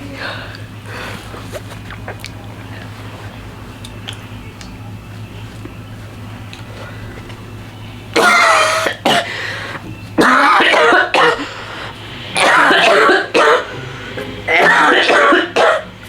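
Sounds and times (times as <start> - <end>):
person coughing hard: 8.2 - 9.6, 10.2 - 13.8, 14.5 - 15.9.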